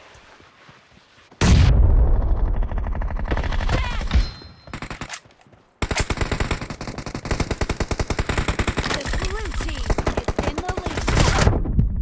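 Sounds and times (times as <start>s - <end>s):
automatic gunfire: 5.8s - 11.5s.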